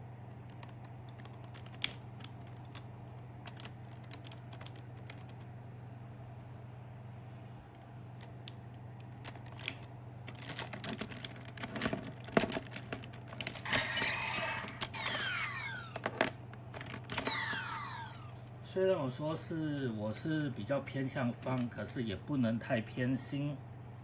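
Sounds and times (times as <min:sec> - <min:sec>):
plastic toys clicking: 0:00.4 - 0:05.4, 0:08.2 - 0:18.1
toy electronic sound effects: 0:13.7 - 0:15.9.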